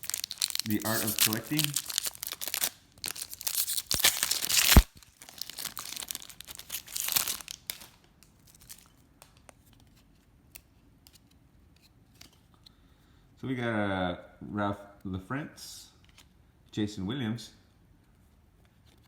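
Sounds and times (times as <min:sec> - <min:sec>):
wrapper tearing and crinkling: 0:00.0 - 0:09.6.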